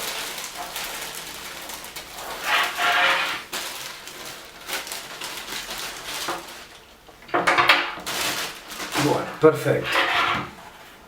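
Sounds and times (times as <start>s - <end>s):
packaging rustling and scraping: 0.0s - 11.0s
small scrapes and knocks: 2.1s - 3.5s, 9.8s - 10.8s.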